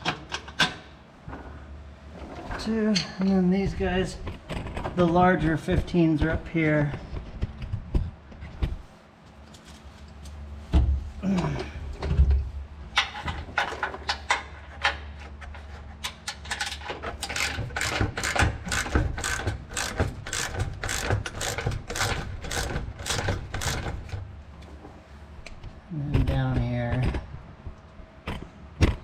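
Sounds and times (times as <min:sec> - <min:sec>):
steady low hum: 0:00.0 - 0:29.0
hand ratchet clicking: 0:16.2 - 0:24.2.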